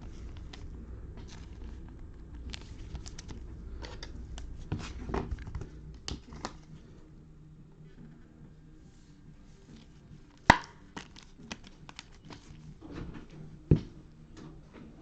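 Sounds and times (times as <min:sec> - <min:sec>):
trading cards clicking and rustling: 0:00.0 - 0:06.7, 0:09.8 - 0:12.6.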